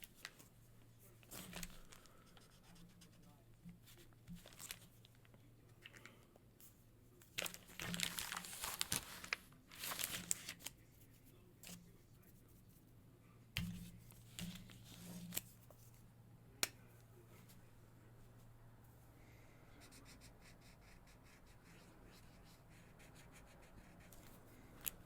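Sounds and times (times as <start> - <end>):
paper crinkling: 1.2 - 2.2, 4.3 - 6.2, 7.2 - 10.8.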